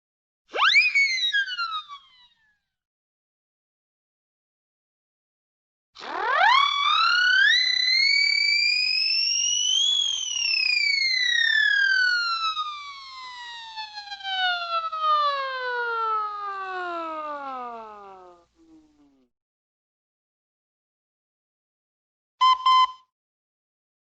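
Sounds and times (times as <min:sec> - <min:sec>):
siren wailing: 0:00.6 - 0:02.2, 0:06.0 - 0:19.0.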